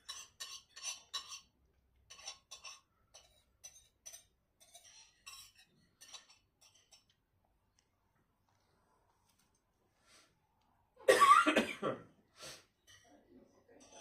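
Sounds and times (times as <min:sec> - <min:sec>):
cutlery scraping a plate: 0:00.0 - 0:07.2, 0:13.8 - 0:14.0.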